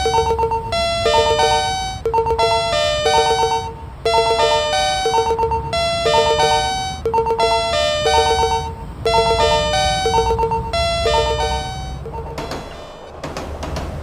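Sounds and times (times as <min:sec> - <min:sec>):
electronic bell-like chime: 0:00.0 - 0:12.8.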